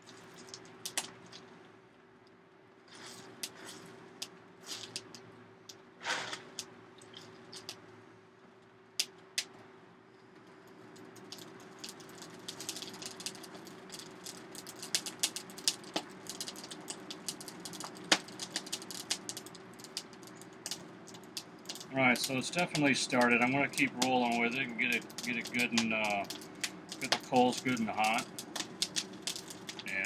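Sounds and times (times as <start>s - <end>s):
coal fire crackling: 0.0s - 2.0s, 2.7s - 8.0s, 10.3s - 30.0s
forge blower hum: 19.2s - 30.0s.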